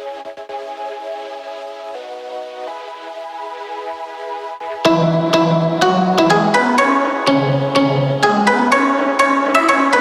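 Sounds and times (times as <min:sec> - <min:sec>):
upbeat instrumental music: 0:04.6 - 0:10.0.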